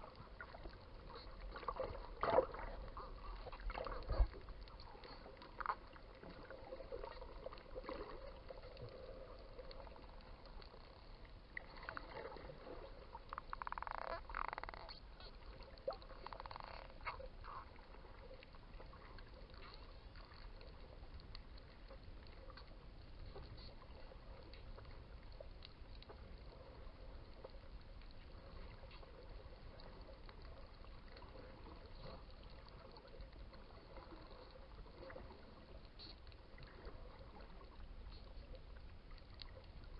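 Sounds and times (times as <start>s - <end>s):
faint crackle of clicks: 0.0s - 39.9s
low underwater rumble: 0.0s - 39.9s
dolphin buzzing calls and clicks: 13.3s - 15.4s.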